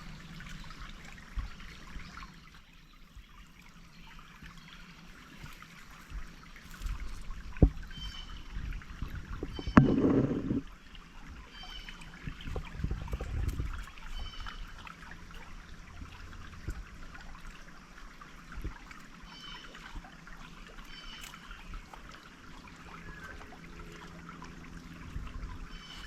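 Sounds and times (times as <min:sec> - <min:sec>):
stream water trickling: 0:00.0 - 0:26.0
low thumps: 0:09.4 - 0:10.6.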